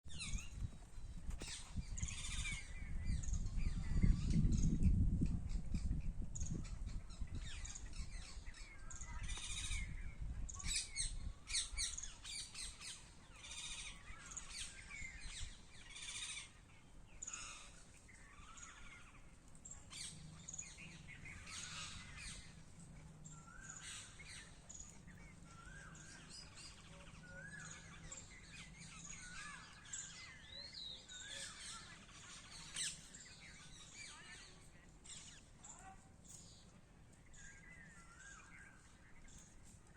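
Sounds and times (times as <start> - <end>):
birds chirping: 0.1 - 39.9.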